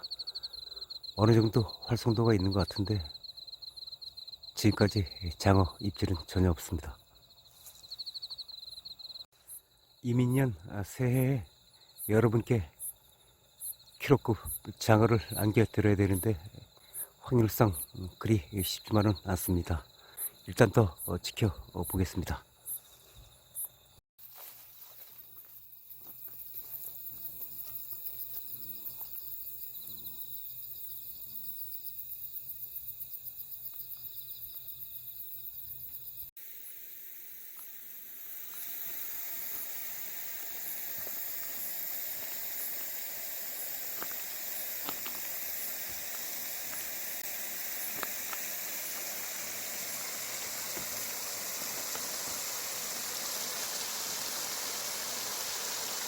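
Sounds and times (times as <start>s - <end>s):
insects chirping: 0.0s - 56.0s
steady full hiss: 36.4s - 56.0s.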